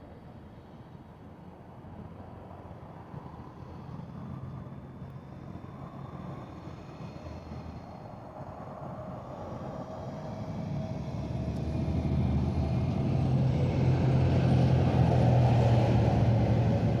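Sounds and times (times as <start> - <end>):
heavy vehicle engine running: 5.3 - 17.0.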